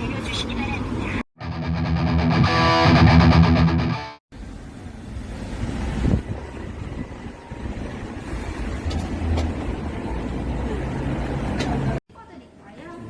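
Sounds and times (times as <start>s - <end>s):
distorted electric guitar music: 1.4s - 4.2s.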